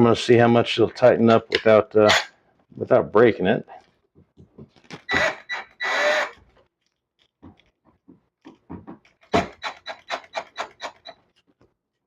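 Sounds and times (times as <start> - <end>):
screwdriver clicks and creaks: 4.8 - 7.8
screwdriver scraping: 4.9 - 6.5, 9.3 - 11.2.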